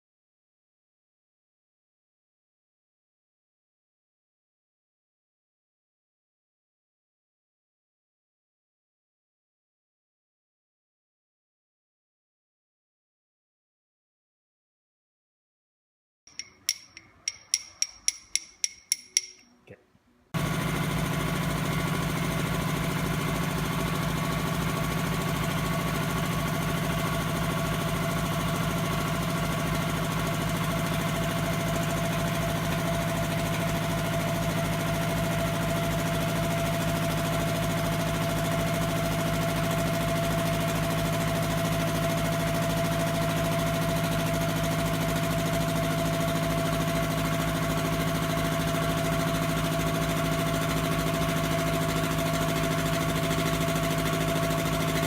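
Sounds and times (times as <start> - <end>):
air compressor running: 20.4 - 55.0.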